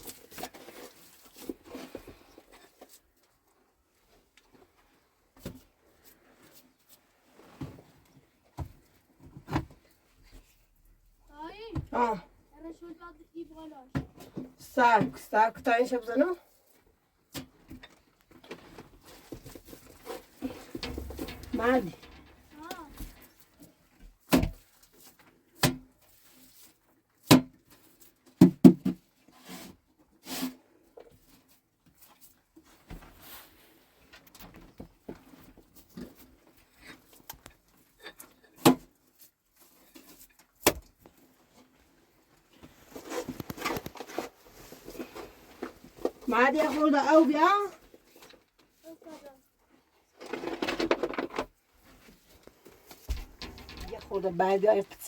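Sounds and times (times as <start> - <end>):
objects knocking and clattering: 19.9 - 23.4, 50.2 - 51.5, 52.5 - 55.0.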